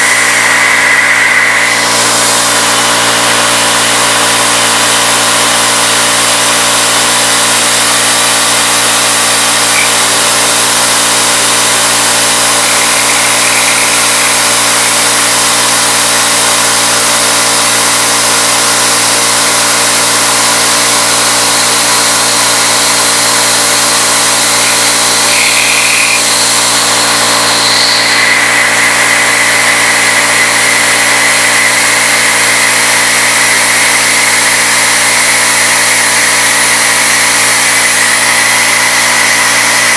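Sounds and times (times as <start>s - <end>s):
high machine tone: 0.0s - 16.8s, 21.1s - 39.9s
milling machine hum: 0.0s - 39.9s.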